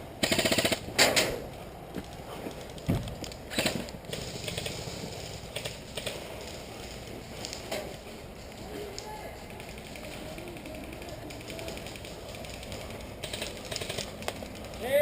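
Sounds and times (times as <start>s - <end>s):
airsoft gun firing bursts: 0.2s - 1.2s, 13.2s - 14.2s.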